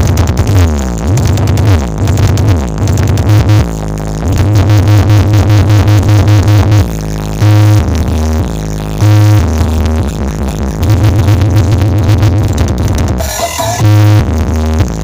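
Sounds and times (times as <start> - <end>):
loud electronic dance music: 13.1 - 14.2.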